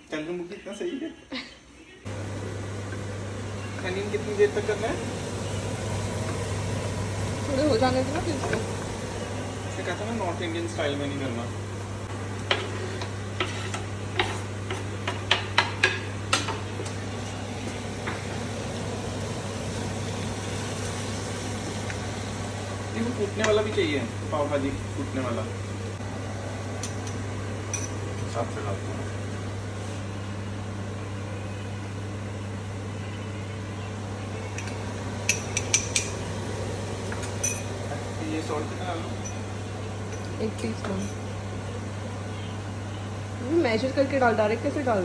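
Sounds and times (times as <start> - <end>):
exhaust fan humming: 2.0 - 45.0
low hum: 2.1 - 12.4, 16.6 - 23.4
spoon tapping against a pan: 14.2 - 16.6
utensil clinking on cookware: 26.8 - 28.0, 34.6 - 36.2, 37.1 - 37.9, 39.1 - 39.5, 40.1 - 41.3.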